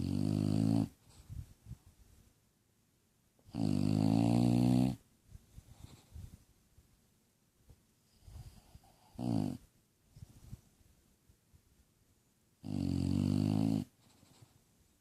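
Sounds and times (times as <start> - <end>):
dog snoring: 0.0 - 1.0, 3.5 - 5.0, 8.2 - 9.6, 12.6 - 14.5
soft breath sounds: 0.9 - 2.4, 5.3 - 6.6, 8.0 - 9.2, 10.1 - 10.9.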